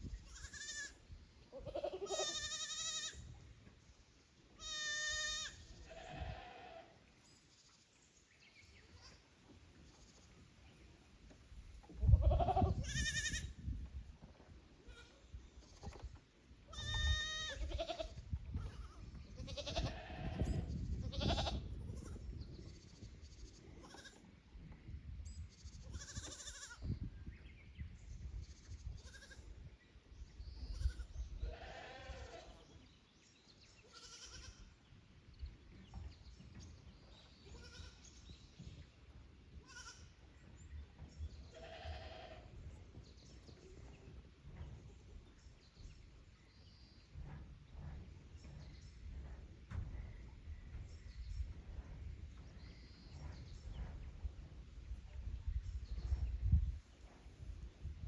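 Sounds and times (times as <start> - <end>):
goats bleating: 1.6 - 3.2, 4.6 - 6.9, 16.7 - 20.5, 31.5 - 32.5, 41.6 - 42.4.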